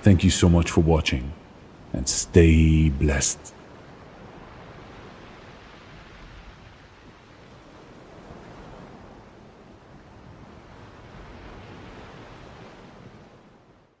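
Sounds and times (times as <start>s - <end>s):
ocean waves breaking: 0.0s - 7.0s.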